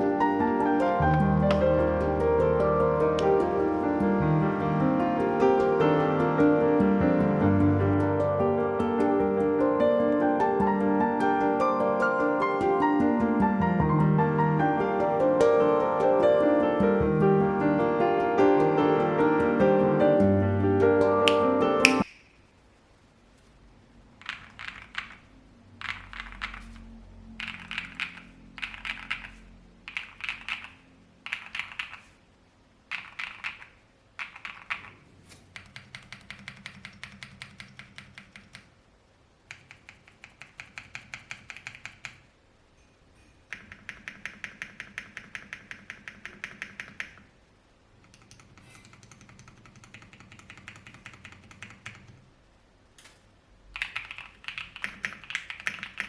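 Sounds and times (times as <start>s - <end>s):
mechanical keyboard typing: 24.2s - 26.8s, 27.4s - 32.1s, 32.9s - 38.7s, 39.5s - 42.3s, 43.5s - 47.3s, 48.0s - 52.2s, 53.7s - 56.0s.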